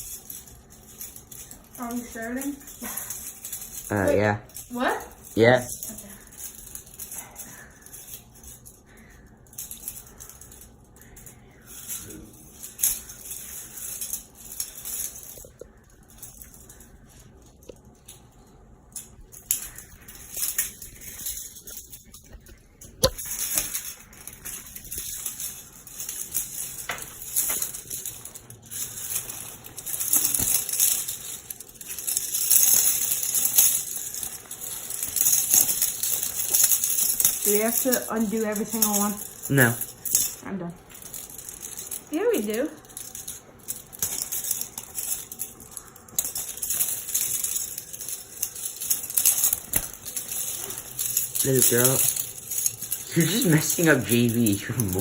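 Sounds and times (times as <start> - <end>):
handcuffs rattling and clinking: 0.0 - 55.0.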